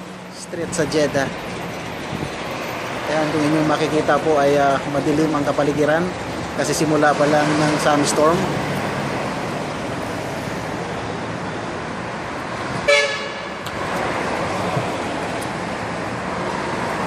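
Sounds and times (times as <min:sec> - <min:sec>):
street traffic noise: 0:00.0 - 0:17.0
car horn toot: 0:12.8 - 0:13.6.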